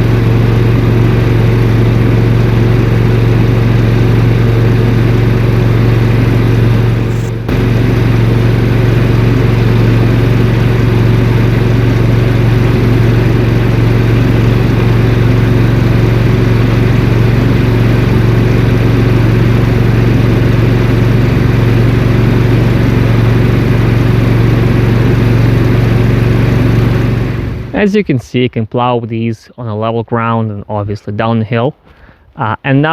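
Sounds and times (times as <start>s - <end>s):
gasoline engine running: 0.0s - 27.9s
blade pushing snow: 6.0s - 11.2s.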